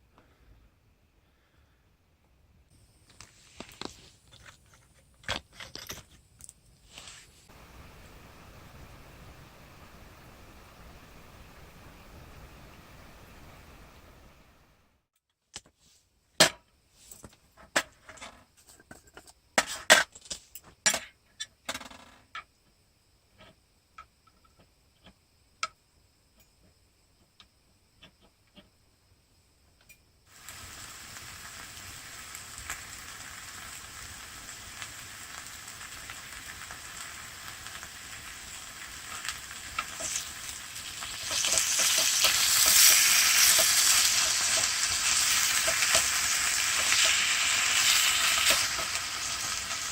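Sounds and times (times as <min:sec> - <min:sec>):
food sizzling in a pan: 0:06.9 - 0:14.7, 0:30.3 - 0:49.9.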